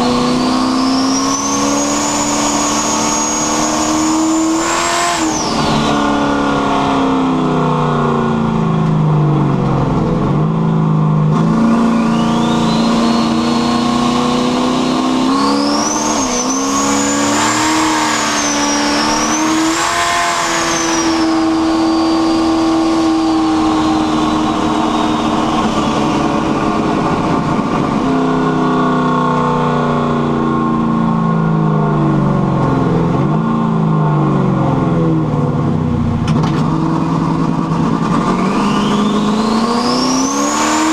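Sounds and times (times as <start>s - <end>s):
car engine revving: 0.0s - 40.9s
turbo whistle: 0.4s - 6.2s, 11.6s - 26.9s, 38.3s - 40.9s.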